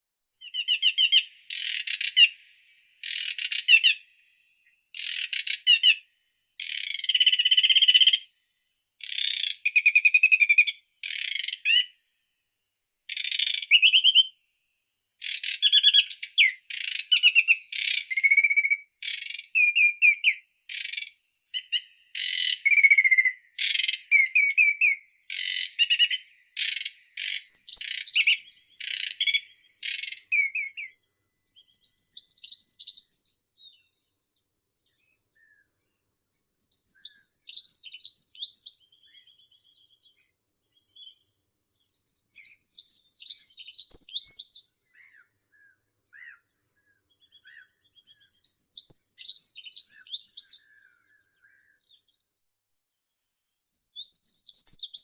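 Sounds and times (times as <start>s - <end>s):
songbird trilling: 0.4s - 2.4s, 15.3s - 34.7s, 36.2s - 46.5s, 47.2s - 51.9s, 53.7s - 55.0s
higher-pitched bird: 21.6s - 33.5s, 36.2s - 40.7s, 41.7s - 45.2s, 47.3s - 51.6s, 53.7s - 55.0s.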